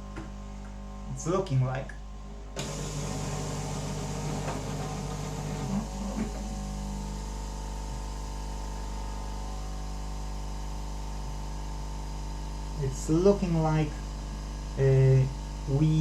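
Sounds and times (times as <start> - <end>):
electrical hum: 0.0 - 16.0
hot air blower hissing: 2.6 - 9.1.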